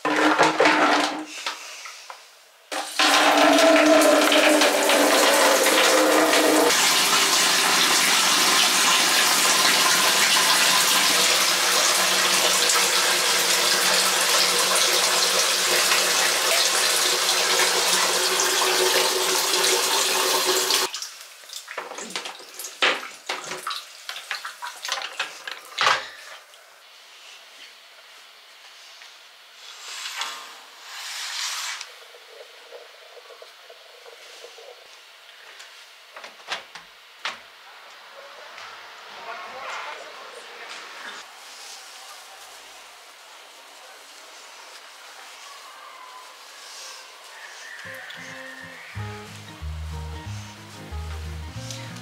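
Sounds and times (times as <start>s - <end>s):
water running from a tap: 2.8s - 25.2s.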